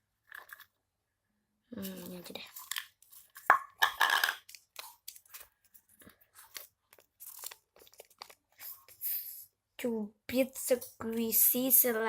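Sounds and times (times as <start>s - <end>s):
crinkling and rustling handling noise: 0.2s - 0.8s, 1.8s - 9.1s.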